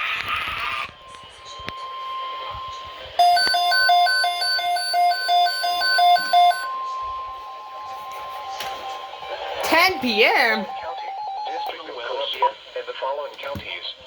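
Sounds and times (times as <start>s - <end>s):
electronic alarm beeping: 3.2s - 7.0s.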